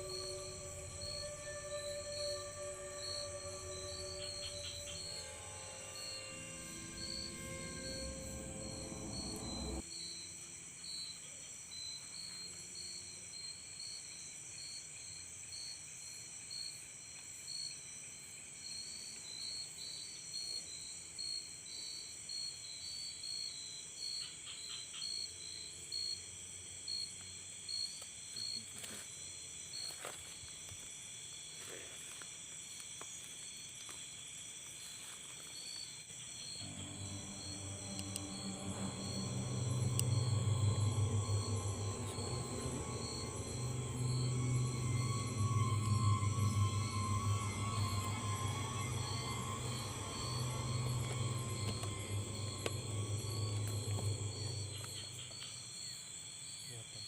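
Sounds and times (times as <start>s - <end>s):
insects trilling: 0.0s - 9.8s, 36.6s - 55.6s
pulsing insect call: 0.0s - 10.2s, 36.6s - 55.8s.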